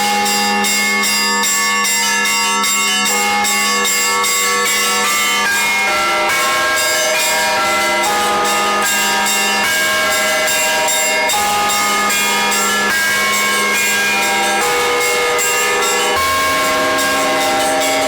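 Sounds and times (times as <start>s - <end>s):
small church bells ringing rapidly: 0.0s - 18.0s
deep bell sounding: 7.4s - 18.0s.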